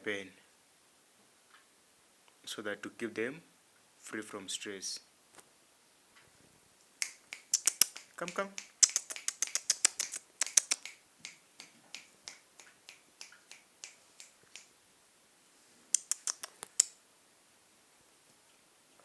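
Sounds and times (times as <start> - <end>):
sharp clicks: 7.0 - 14.7, 15.9 - 17.0.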